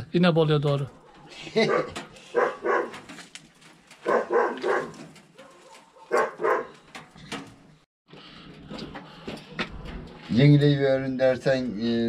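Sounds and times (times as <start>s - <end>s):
dog barking: 1.0s - 3.1s, 4.0s - 6.8s.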